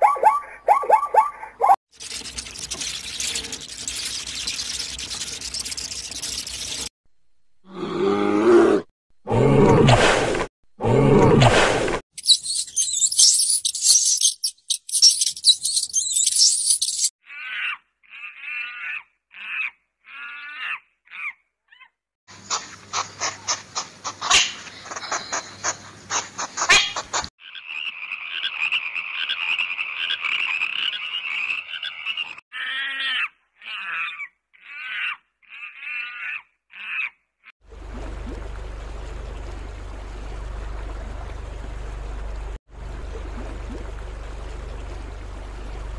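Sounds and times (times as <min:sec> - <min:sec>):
rushing water: 0:37.6 - 0:45.9.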